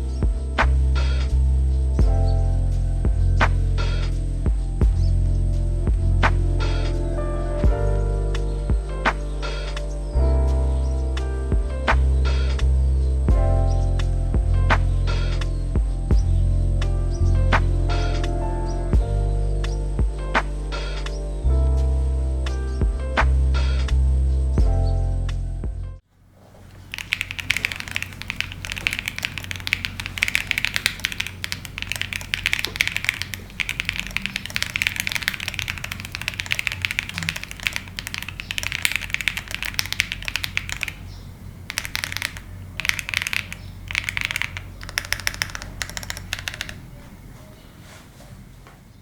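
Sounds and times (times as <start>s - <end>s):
mechanical keyboard typing: 26.6s - 47.0s.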